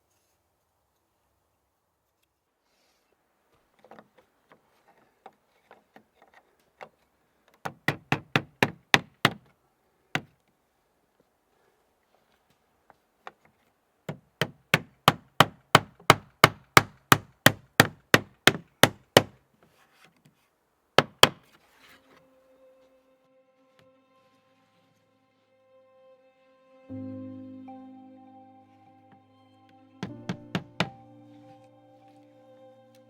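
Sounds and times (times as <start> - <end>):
hammer driving nails into shingles: 7.7 - 9.5, 14.1 - 19.4, 21.0 - 21.5, 30.0 - 31.0.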